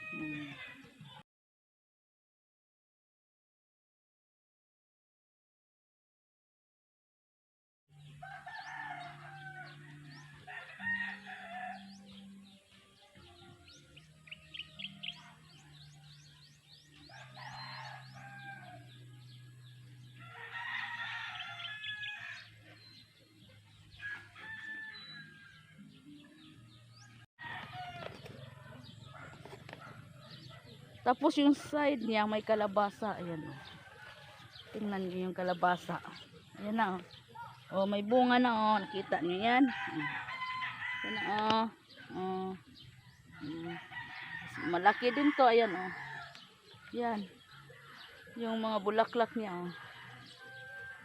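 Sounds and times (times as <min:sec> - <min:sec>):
roosters crowing: 0:00.0 - 0:01.0, 0:08.2 - 0:12.0, 0:17.1 - 0:19.0, 0:20.1 - 0:23.0, 0:23.7 - 0:25.8, 0:27.4 - 0:30.8, 0:32.6 - 0:35.0, 0:36.8 - 0:42.3, 0:43.3 - 0:46.8, 0:47.5 - 0:51.0
small birds chirping: 0:08.0 - 0:27.2, 0:27.8 - 0:38.8.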